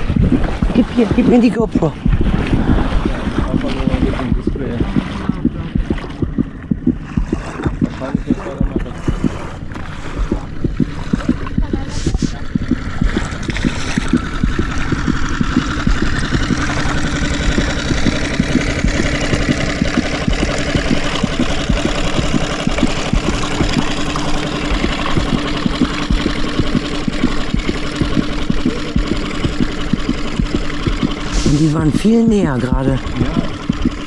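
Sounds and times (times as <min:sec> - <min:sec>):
wind buffeting microphone: 0:00.0 - 0:31.9
outboard motor running: 0:00.0 - 0:34.0
water noise: 0:00.0 - 0:34.0.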